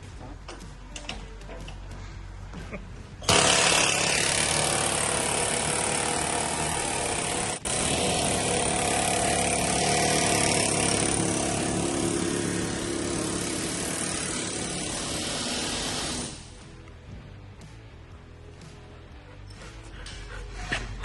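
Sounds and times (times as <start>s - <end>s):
loud power tool running: 3.2s - 16.5s.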